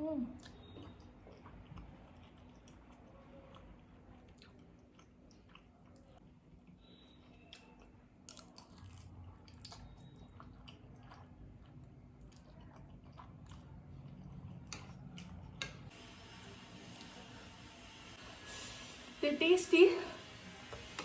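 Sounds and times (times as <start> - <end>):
chewing noodles: 0.4 - 15.6.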